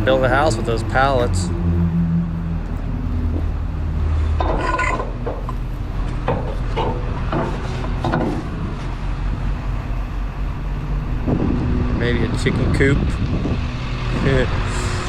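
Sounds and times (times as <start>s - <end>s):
wood knocks and scrapes: 4.4s - 9.0s.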